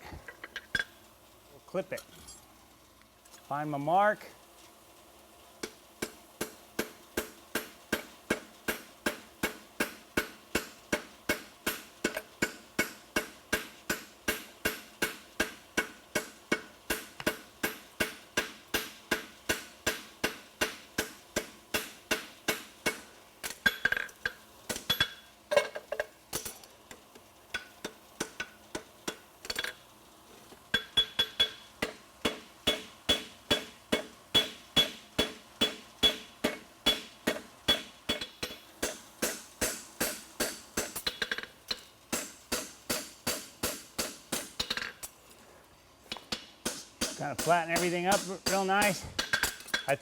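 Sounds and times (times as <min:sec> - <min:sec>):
hammer clanging on horseshoe: 0:30.8 - 0:41.5, 0:46.1 - 0:50.0.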